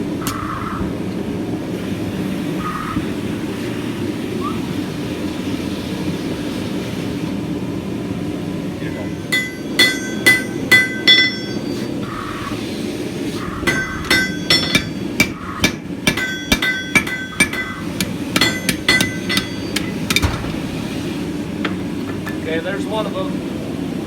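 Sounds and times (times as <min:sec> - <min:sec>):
hammer striking steel on anvil: 0:08.9 - 0:12.6, 0:13.6 - 0:22.3.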